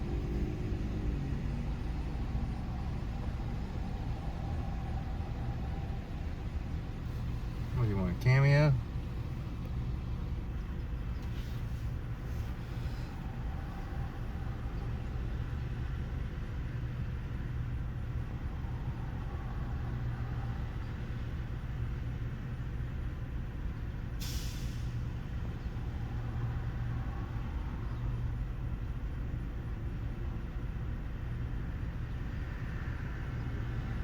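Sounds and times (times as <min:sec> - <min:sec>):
vehicle engine idling: 0:00.0 - 0:34.0
air brake hiss: 0:11.2 - 0:14.0, 0:24.2 - 0:25.2.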